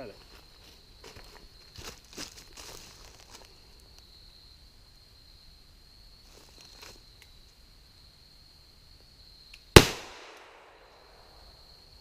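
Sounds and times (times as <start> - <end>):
pistol shot: 9.8 - 10.9.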